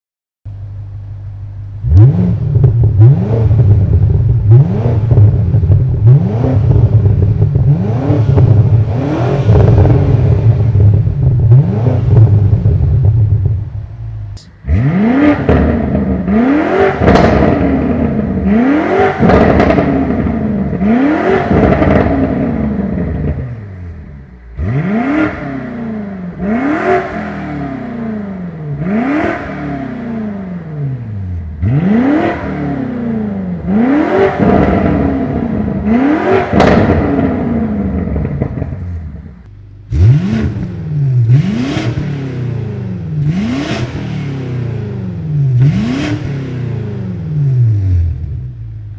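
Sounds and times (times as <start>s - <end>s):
car engine revving: 1.6s - 48.9s.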